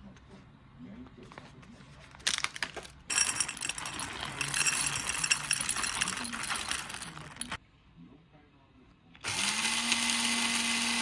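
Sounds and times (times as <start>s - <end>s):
small hard objects rattling: 2.2s - 7.6s.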